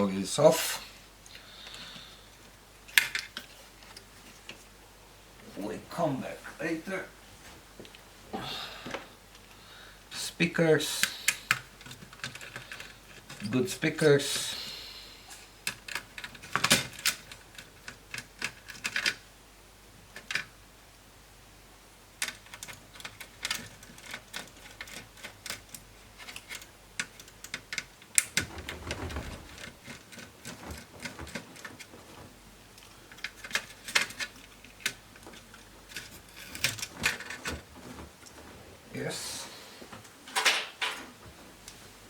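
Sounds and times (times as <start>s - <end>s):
plastic laptop parts clicking: 15.7s - 19.2s, 22.2s - 28.5s.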